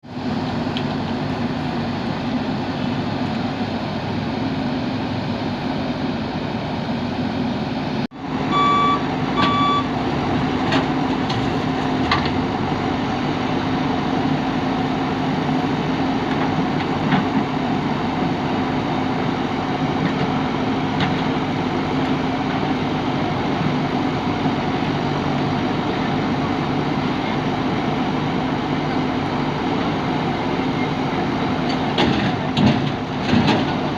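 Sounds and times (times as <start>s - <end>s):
diesel engine running: 0.0s - 33.9s
reversing alarm beeps: 8.5s - 9.9s.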